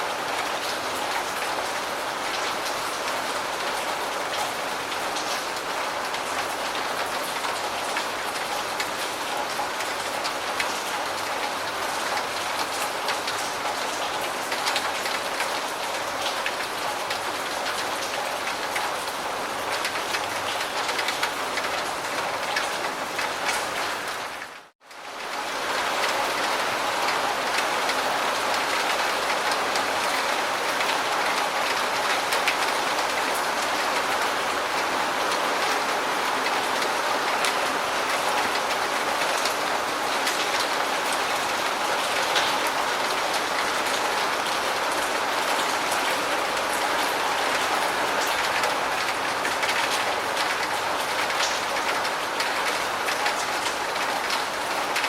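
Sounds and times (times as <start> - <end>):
raindrop ticks: 48.2 - 55.0.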